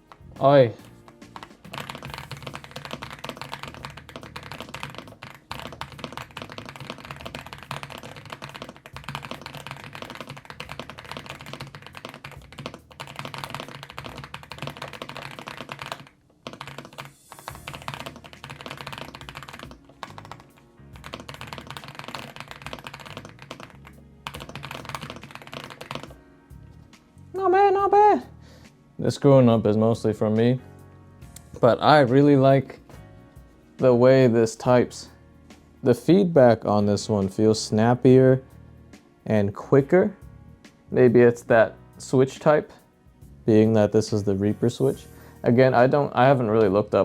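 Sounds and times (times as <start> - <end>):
fast typing on mechanical keyboard: 1.2 - 26.2.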